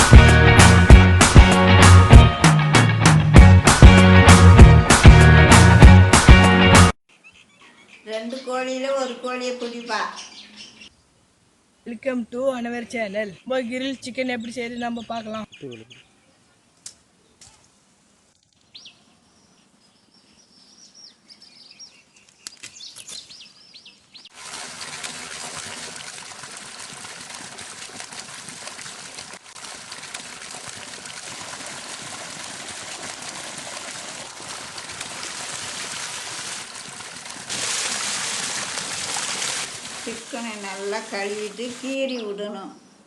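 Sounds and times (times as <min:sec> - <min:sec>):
water running: 0:24.3 - 0:42.4.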